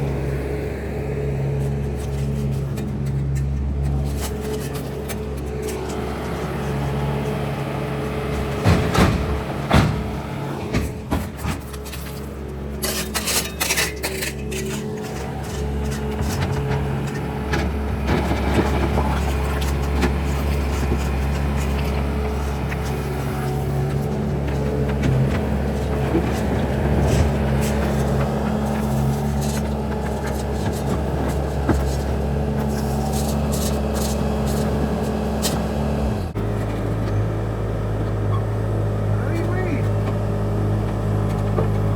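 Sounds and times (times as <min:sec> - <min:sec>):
heavy machinery engine running: 0:00.0 - 0:41.9
rubble clattering and scraping: 0:01.6 - 0:41.9.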